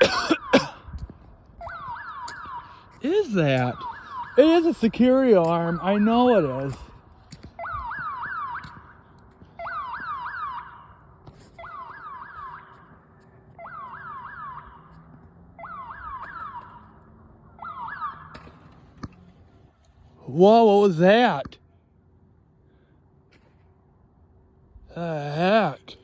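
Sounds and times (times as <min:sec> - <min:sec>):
alarm siren whooping: 0:01.5 - 0:19.0.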